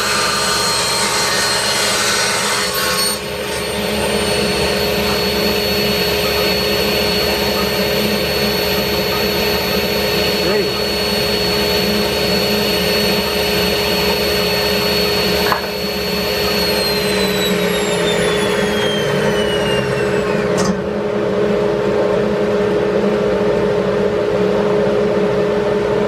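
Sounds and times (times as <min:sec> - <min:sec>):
table saw blade spinning down: 0:00.0 - 0:20.8.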